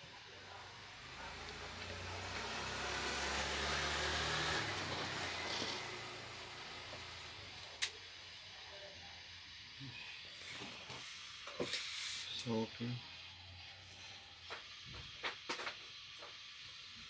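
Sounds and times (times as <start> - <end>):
vehicle passing by: 0.7 - 7.6.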